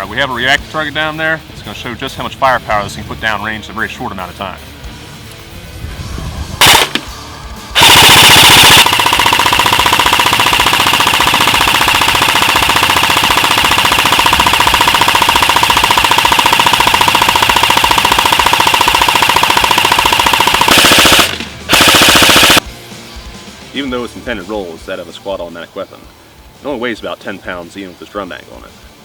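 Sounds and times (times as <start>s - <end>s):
airsoft gun firing bursts: 6.6s - 7.1s, 7.8s - 22.6s.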